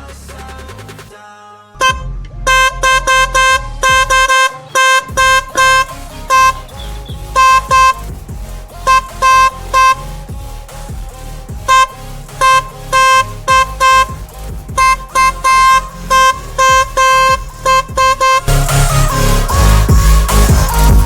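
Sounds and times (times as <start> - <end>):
background music: 0.0 - 21.0
motorcycle horn honks: 1.8 - 6.6, 14.8 - 18.5.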